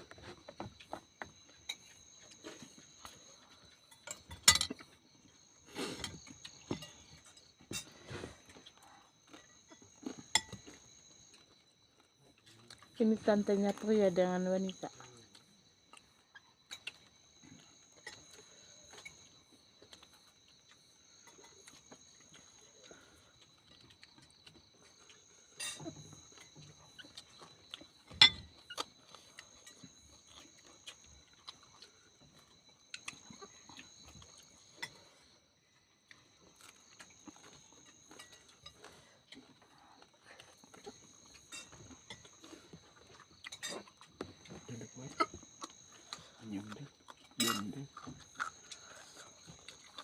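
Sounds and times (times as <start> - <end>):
person chewing: 15.3 - 35.3, 36.0 - 44.6, 45.2 - 50.0.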